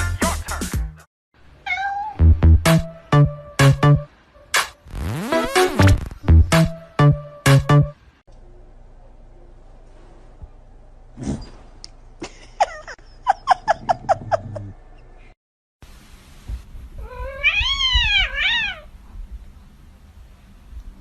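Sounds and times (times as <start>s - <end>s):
cat meowing: 1.6s - 2.2s, 17.0s - 18.9s.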